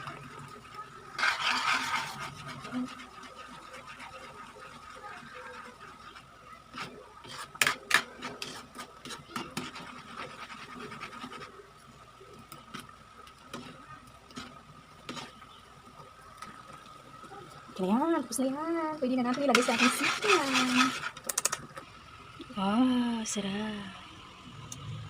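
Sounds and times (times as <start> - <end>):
utensil scraping a pan: 1.1 - 11.6, 13.5 - 15.6, 19.2 - 21.6.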